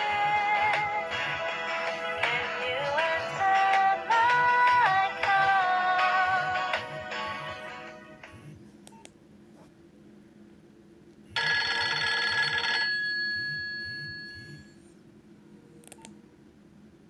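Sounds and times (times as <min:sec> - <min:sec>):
phone ringtone tune: 0:00.0 - 0:07.9, 0:11.4 - 0:14.8
bright chime-like ringtone: 0:11.4 - 0:14.8.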